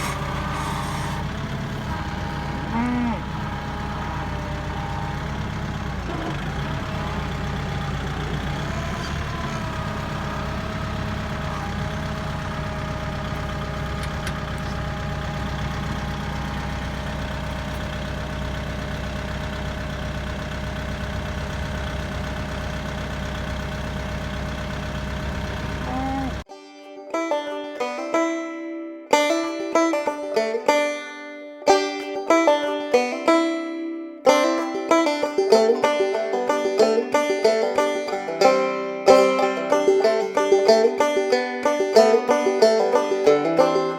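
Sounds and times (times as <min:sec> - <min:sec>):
vehicle engine idling: 0:00.0 - 0:26.5.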